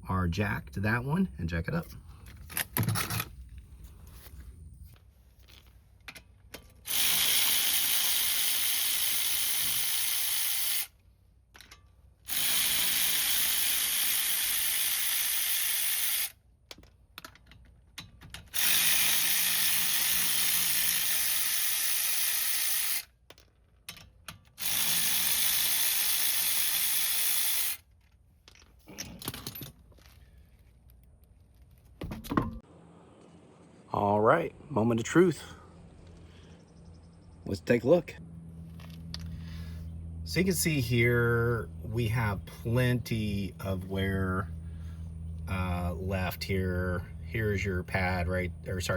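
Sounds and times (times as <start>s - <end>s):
powered jack motor running: 6.8s - 11.0s, 12.2s - 16.4s, 18.5s - 23.1s, 24.6s - 27.9s, 38.2s - 48.9s.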